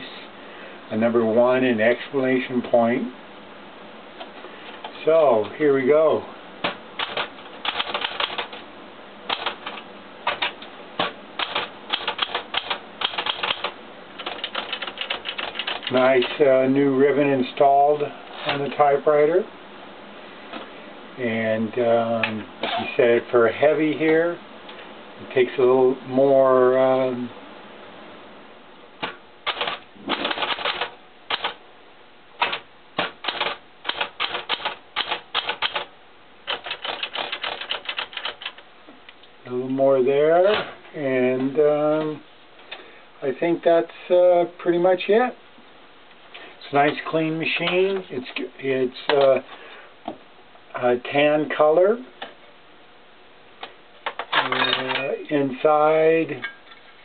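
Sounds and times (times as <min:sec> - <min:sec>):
manual typewriter typing clicks: 0:06.6 - 0:08.6, 0:09.3 - 0:16.4, 0:29.0 - 0:31.6, 0:32.4 - 0:35.9, 0:36.5 - 0:38.6.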